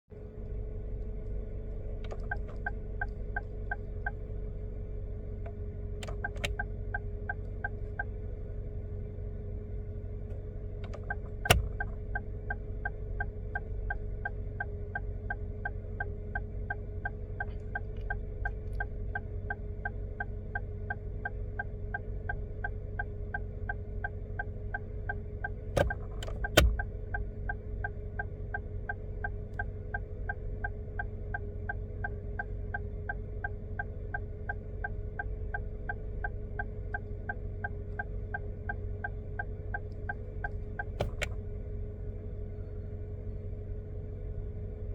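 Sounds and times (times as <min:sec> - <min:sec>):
turn signal indicator clicking: 0:01.9 - 0:04.2, 0:05.4 - 0:08.2, 0:10.3 - 0:41.5
air conditioning hum: 0:07.8 - 0:12.4, 0:25.6 - 0:27.8.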